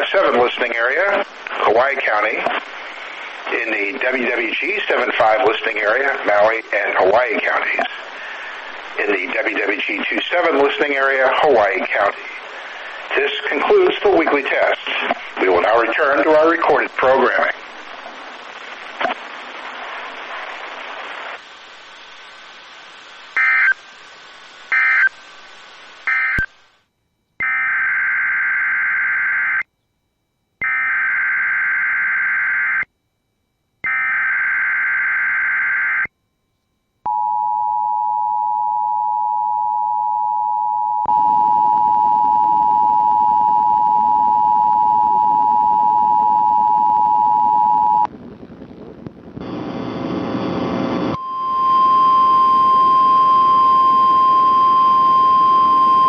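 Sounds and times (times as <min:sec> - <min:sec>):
short data bursts: 0:00.0 - 0:26.6
radio hiss: 0:00.0 - 0:26.8, 0:48.0 - 0:56.0.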